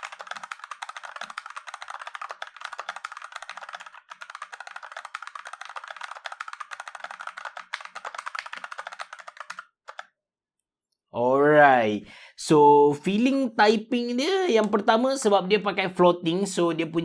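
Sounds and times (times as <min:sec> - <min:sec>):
fast mechanical keyboard typing: 0:00.0 - 0:10.1.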